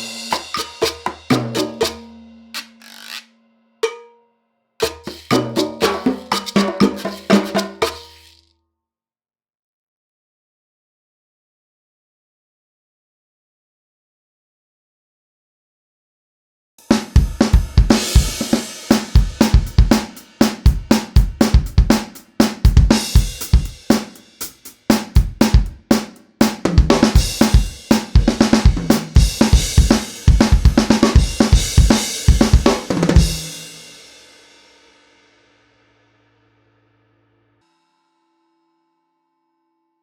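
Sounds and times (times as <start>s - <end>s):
cymbal ringing out: 0.0s - 3.1s, 16.8s - 20.9s
drum kit playing: 0.0s - 4.1s, 4.8s - 8.4s, 16.8s - 34.3s.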